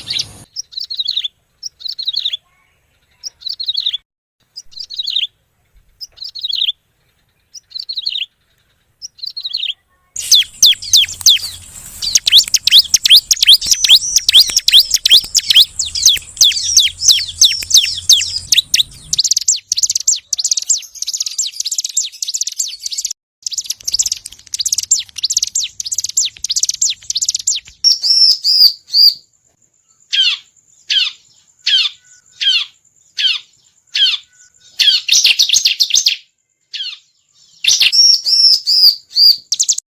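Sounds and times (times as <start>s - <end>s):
bird chattering song: 0.0s - 29.2s, 29.8s - 39.8s
high downward-slurred bird notes: 10.2s - 20.1s.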